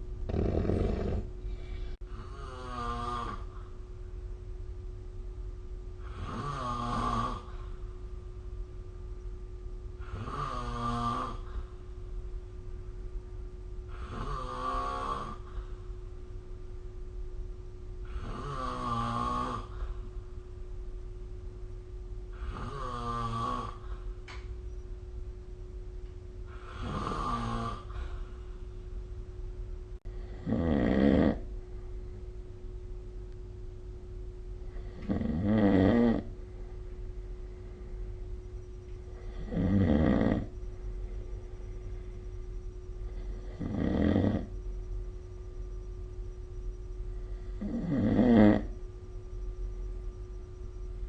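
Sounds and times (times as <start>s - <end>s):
faint steady hum: 0.0s - 51.0s
person snoring: 0.3s - 3.6s, 6.0s - 7.6s, 10.0s - 11.6s, 13.9s - 15.6s, 18.0s - 20.0s, 22.3s - 23.8s, 26.5s - 28.1s, 30.1s - 31.5s, 34.7s - 36.3s, 39.2s - 40.5s, 43.0s - 44.5s, 47.2s - 48.7s.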